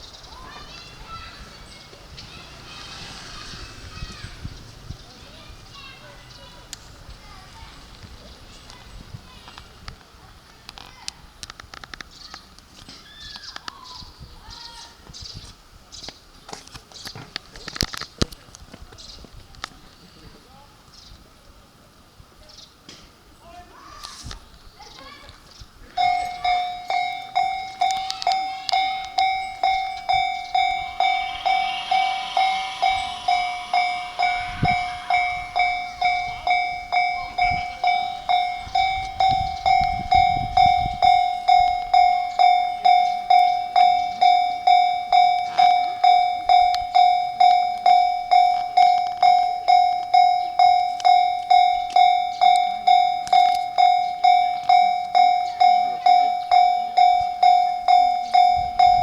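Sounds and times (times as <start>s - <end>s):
train running: 0.0s - 9.6s, 26.0s - 44.2s
level crossing warning bell: 26.0s - 59.0s.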